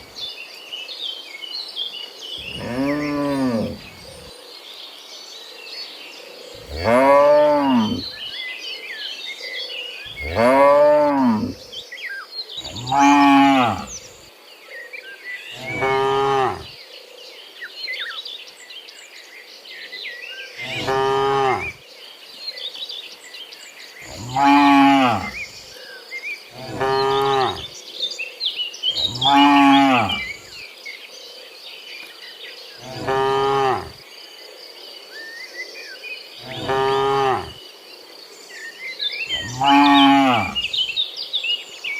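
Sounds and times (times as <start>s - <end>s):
high insect hum: 0.0s - 41.9s
cattle mooing: 2.4s - 4.2s, 6.6s - 8.2s, 10.1s - 11.6s, 12.6s - 14.0s, 15.6s - 16.7s, 20.6s - 21.8s, 24.1s - 25.4s, 26.6s - 27.7s, 29.0s - 30.4s, 32.8s - 34.0s, 36.4s - 37.6s, 39.3s - 40.8s.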